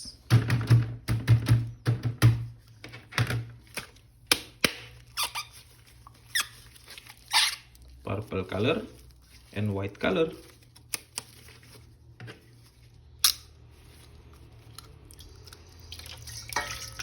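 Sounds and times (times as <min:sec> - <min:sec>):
plastic packaging clicks and rustles: 0:04.8 - 0:13.1.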